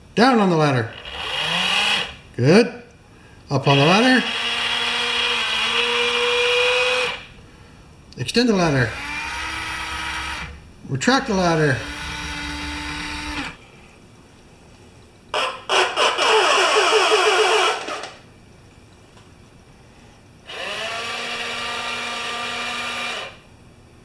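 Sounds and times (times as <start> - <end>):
small electric motors whirring: 1.0 - 2.2, 3.7 - 7.3, 8.9 - 10.6, 11.7 - 13.6, 20.5 - 23.4.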